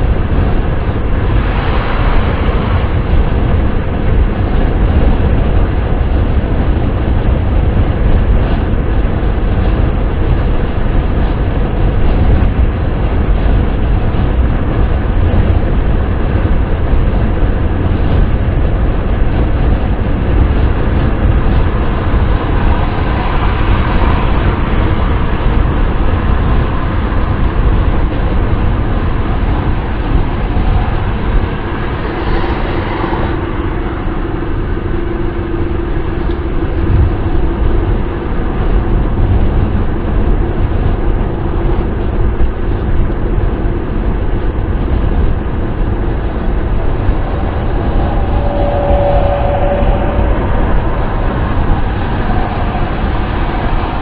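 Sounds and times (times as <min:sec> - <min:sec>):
car driving road noise: 0:00.0 - 0:54.0
faint hum: 0:44.3 - 0:54.0.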